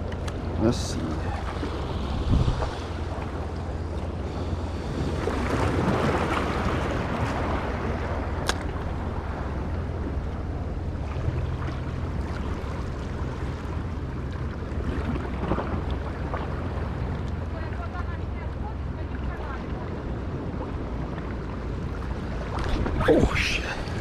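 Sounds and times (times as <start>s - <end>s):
wind buffeting microphone: 0.0s - 24.0s
waves washing against rocks: 4.5s - 9.6s, 22.0s - 24.0s.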